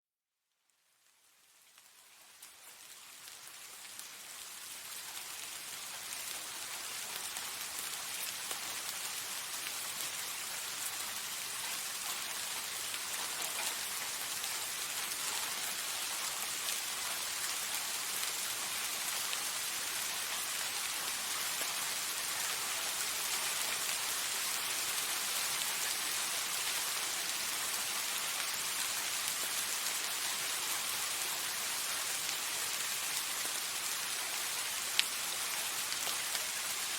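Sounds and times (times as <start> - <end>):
soft steady rain: 0.3 - 36.9.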